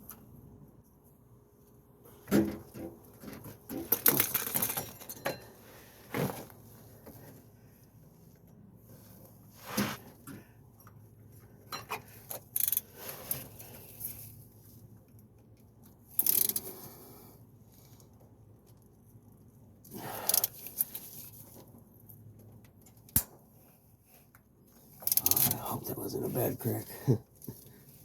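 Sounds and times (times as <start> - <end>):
tools clicking and clinking: 16.2 - 16.7, 25.0 - 25.6.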